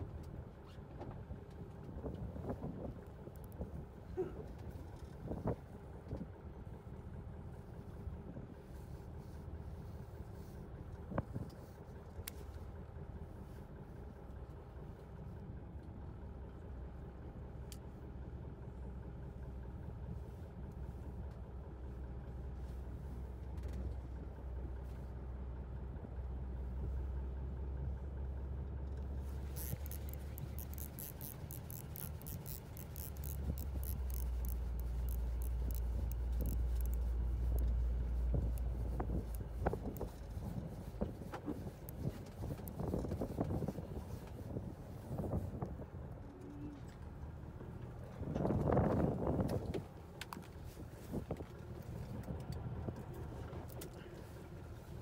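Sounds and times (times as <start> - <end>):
boat engine humming: 0.0 - 55.0
fast high ticking: 29.3 - 40.2.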